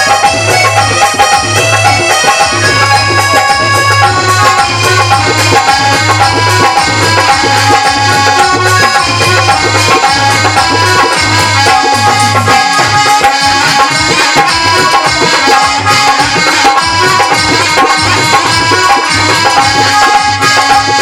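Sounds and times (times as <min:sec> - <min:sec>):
hand drum beat: 0:00.0 - 0:21.0
reed instrument notes: 0:00.0 - 0:21.0.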